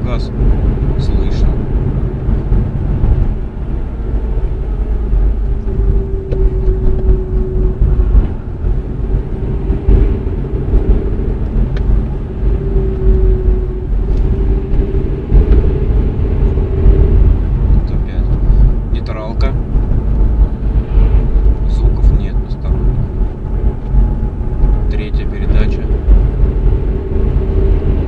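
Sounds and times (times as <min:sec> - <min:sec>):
engine and road rumble: 0:00.0 - 0:28.0
humming tone: 0:01.5 - 0:17.8.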